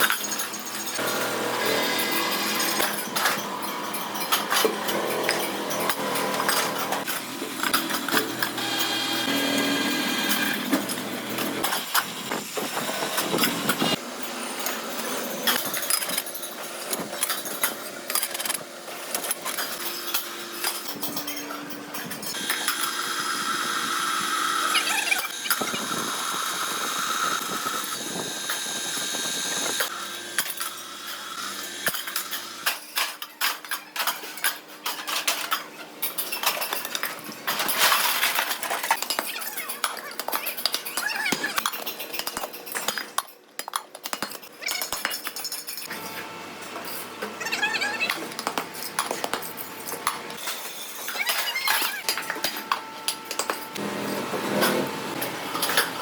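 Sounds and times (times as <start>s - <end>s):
machine noise: 0.0s - 33.0s.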